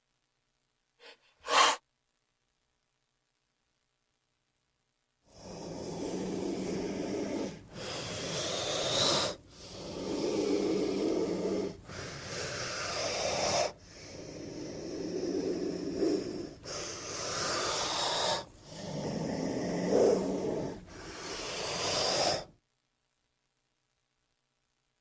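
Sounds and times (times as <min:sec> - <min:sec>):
creature hissing calls: 0:01.0 - 0:01.8, 0:05.3 - 0:22.5.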